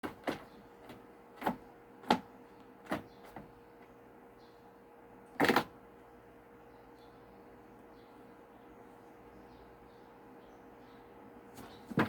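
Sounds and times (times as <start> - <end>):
faint steady hum: 0.0 - 12.0
cats scampering and skidding: 11.4 - 12.0.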